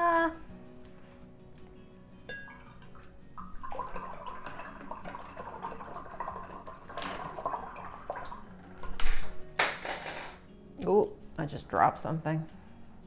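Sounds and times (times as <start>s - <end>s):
water sloshing and dripping: 2.4s - 9.4s.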